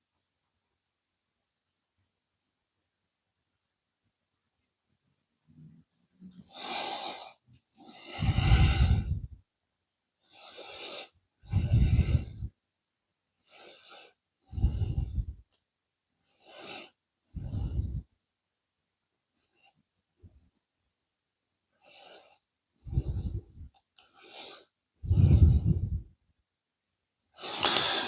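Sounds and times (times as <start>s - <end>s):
person breathing close to microphone: 6.4s - 9.4s, 10.2s - 12.6s, 13.4s - 15.5s, 16.3s - 18.1s, 21.8s - 26.2s, 27.4s - 28.0s.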